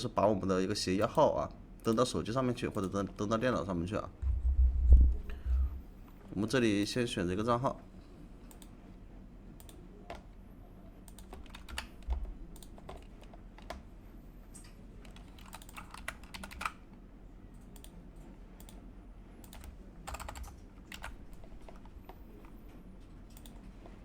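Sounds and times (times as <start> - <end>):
typing on keyboard: 9.6 - 10.3, 11.1 - 13.9, 15.0 - 17.0, 17.6 - 18.0, 19.4 - 22.6, 23.3 - 23.7.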